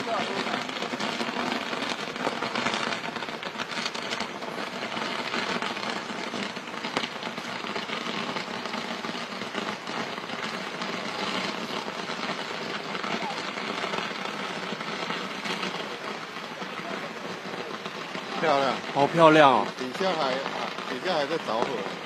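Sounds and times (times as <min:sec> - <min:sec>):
fireworks crackling and hissing: 0:00.0 - 0:22.0.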